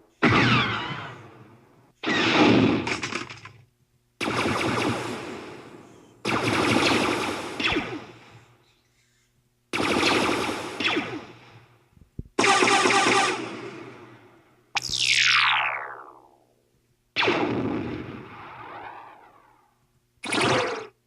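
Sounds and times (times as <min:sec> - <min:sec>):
blaster shots: 0:00.2 - 0:03.3, 0:04.2 - 0:08.3, 0:09.7 - 0:11.6, 0:12.4 - 0:16.4, 0:17.2 - 0:19.6, 0:20.2 - 0:21.0.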